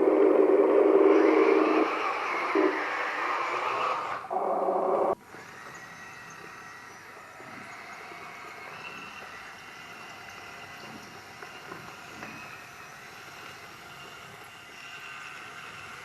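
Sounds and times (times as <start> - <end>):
model motor running loudly: 5.1 - 16.0.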